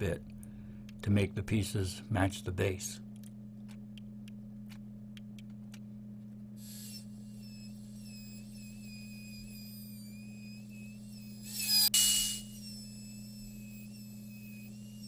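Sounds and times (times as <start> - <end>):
router whining: 6.6 - 15.0.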